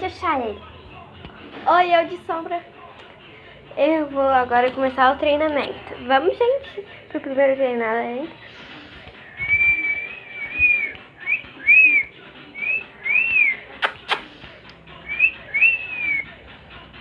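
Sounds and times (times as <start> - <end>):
person whistling: 9.3 - 14.2, 15.1 - 16.3
finger snaps: 13.8 - 14.8.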